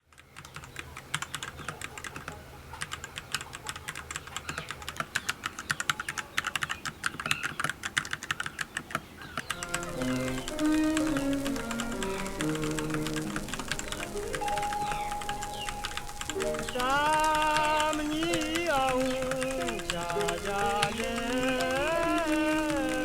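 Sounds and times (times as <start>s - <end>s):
mechanical keyboard clicks: 0.0s - 23.0s
music: 9.6s - 23.0s.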